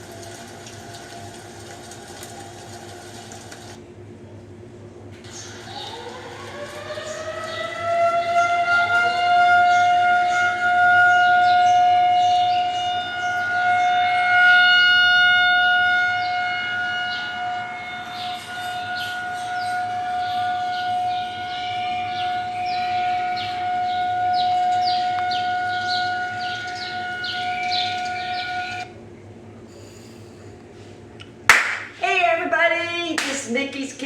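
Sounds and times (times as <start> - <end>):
warning siren winding: 5.5 - 11.3, 16.1 - 28.9.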